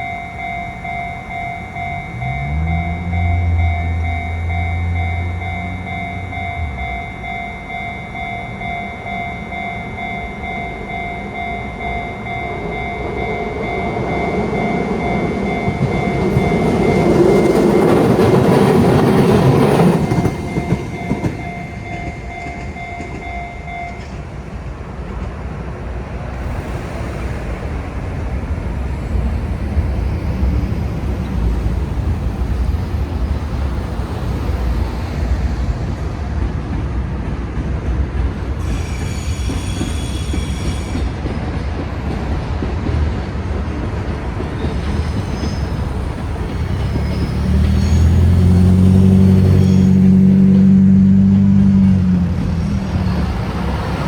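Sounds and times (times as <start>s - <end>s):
level crossing alarm ringing: 0.0s - 24.5s
rail traffic rumble: 0.0s - 54.0s
train passing: 0.0s - 54.0s.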